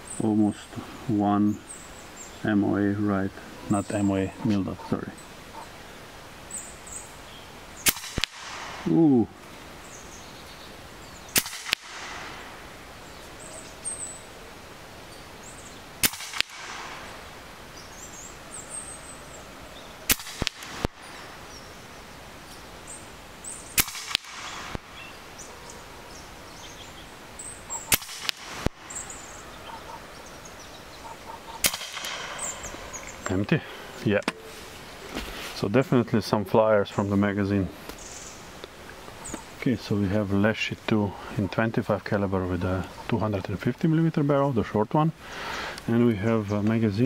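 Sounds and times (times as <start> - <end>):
air rifle shots: 7.8 - 9.0, 11.3 - 12.8, 16.0 - 17.4, 20.1 - 21.4, 23.7 - 25.1, 27.8 - 29.4, 31.6 - 33.2.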